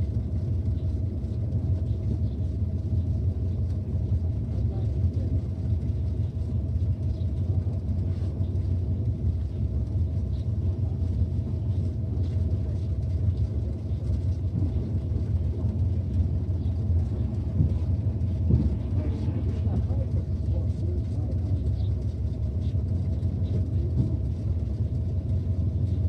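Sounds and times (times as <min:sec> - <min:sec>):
truck engine rumble: 0:00.0 - 0:26.0
road noise: 0:09.9 - 0:26.0.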